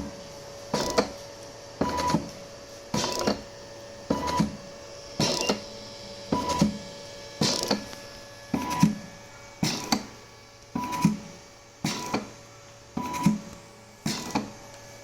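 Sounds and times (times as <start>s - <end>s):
ventilator mechanism whirring and clicking: 0.0s - 15.0s.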